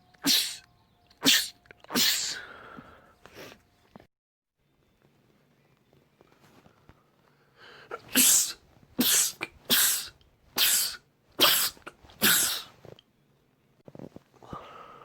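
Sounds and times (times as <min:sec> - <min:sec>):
man sneezing: 0:00.2 - 0:00.6, 0:01.2 - 0:02.5, 0:07.9 - 0:12.8.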